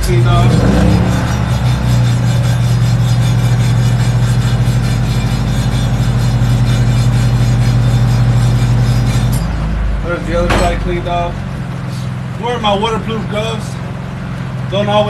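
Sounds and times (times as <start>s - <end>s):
rough scrubbing: 0.0s - 9.5s.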